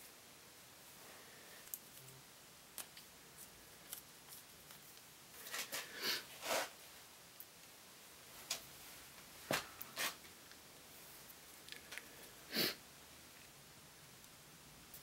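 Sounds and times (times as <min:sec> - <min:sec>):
light clicks of small parts: 0:01.6 - 0:03.1.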